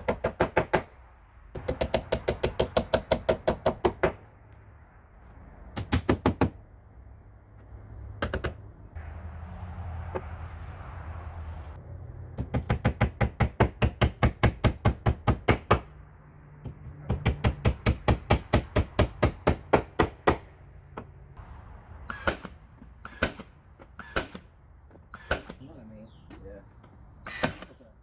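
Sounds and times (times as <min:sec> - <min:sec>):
hammer striking nails in wood: 0:00.0 - 0:00.9, 0:01.6 - 0:04.2, 0:05.8 - 0:06.6, 0:12.4 - 0:15.9, 0:16.6 - 0:21.1, 0:22.1 - 0:25.6.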